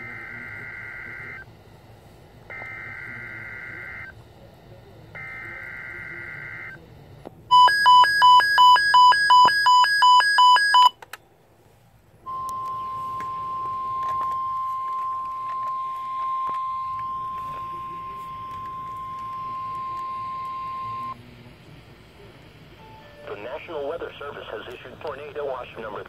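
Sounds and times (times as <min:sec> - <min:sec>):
rapid electronic beeping: 0:12.3 - 0:21.2.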